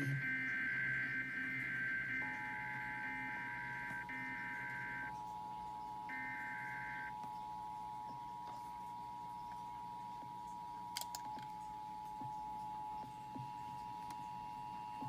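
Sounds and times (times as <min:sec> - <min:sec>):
steady two-tone attention signal: 0:00.0 - 0:05.1, 0:06.1 - 0:07.1
screechy data bursts: 0:00.0 - 0:05.2, 0:06.1 - 0:07.1.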